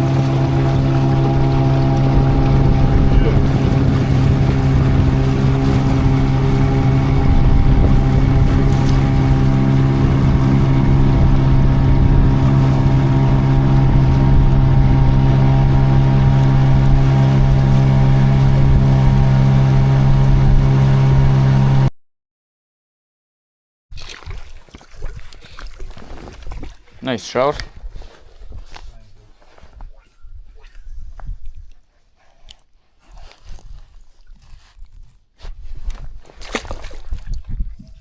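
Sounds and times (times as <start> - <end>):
outboard motor running: 0.0 - 21.9
wind on microphone: 0.0 - 21.9, 29.6 - 32.0, 33.0 - 38.0.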